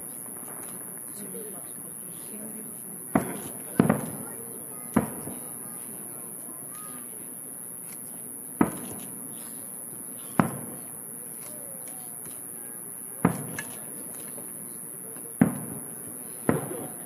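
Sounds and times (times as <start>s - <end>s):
small firework pop: 3.1s - 5.5s, 8.6s - 9.6s, 13.2s - 14.5s, 15.2s - 15.8s, 16.4s - 17.0s
firework shells booming: 3.1s - 7.1s, 8.0s - 17.0s.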